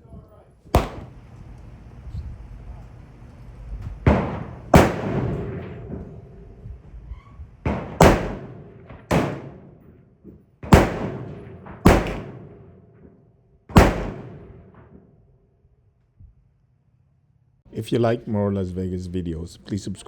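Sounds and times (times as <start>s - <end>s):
gunshots with echo: 0.8s - 1.2s, 4.1s - 6.4s, 7.7s - 9.9s, 10.6s - 13.0s, 13.7s - 15.0s.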